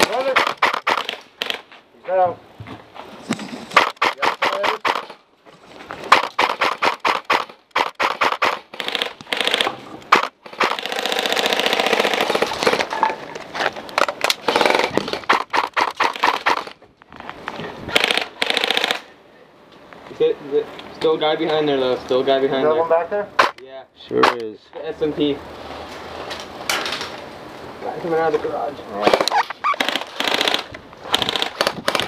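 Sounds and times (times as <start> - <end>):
airsoft guns firing bursts: 0.0 - 1.7, 3.8 - 5.2, 6.1 - 12.9, 14.4 - 16.7, 17.9 - 19.1, 29.1 - 32.0.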